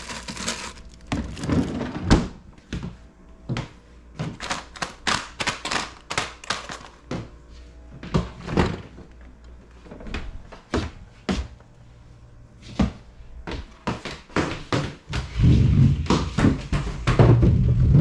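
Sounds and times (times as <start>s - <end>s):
items knocking and clunking: 0.0s - 2.4s.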